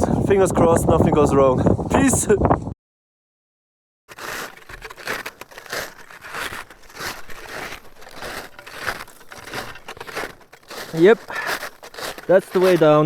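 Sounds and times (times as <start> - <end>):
footsteps crunching on scree: 4.1 - 13.0.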